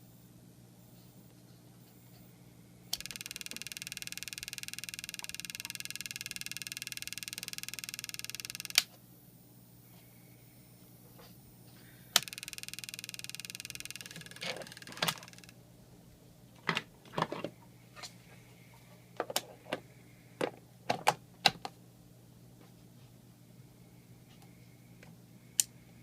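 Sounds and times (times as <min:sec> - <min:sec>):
rapid rasping electronic buzz: 0:02.9 - 0:08.9, 0:10.1 - 0:15.6.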